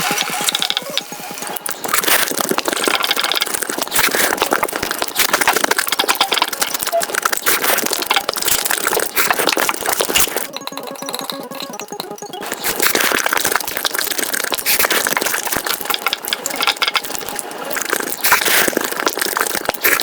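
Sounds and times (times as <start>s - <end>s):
sped-up chewing and crunching: 0.0s - 20.0s.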